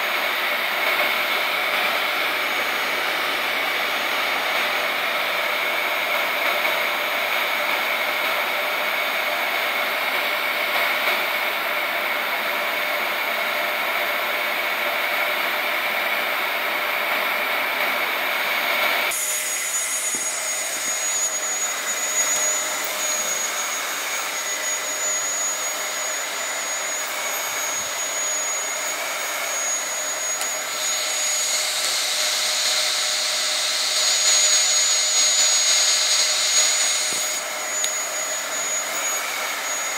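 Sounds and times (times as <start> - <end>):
vacuum cleaner whining: 0.0 - 39.9.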